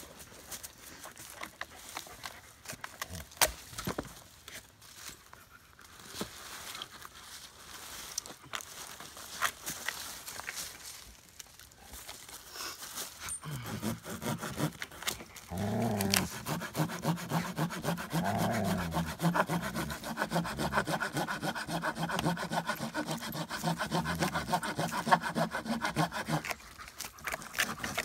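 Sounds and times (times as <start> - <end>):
hand saw cutting wood: 13.5 - 28.0.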